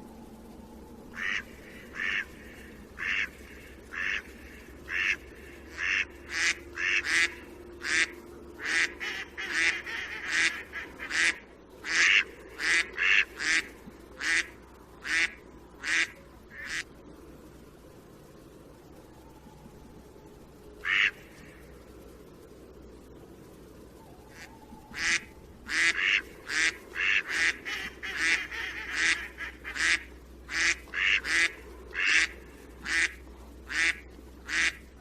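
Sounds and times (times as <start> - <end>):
duck quacking: 1.2 - 16.9, 20.8 - 21.2, 24.3 - 34.8.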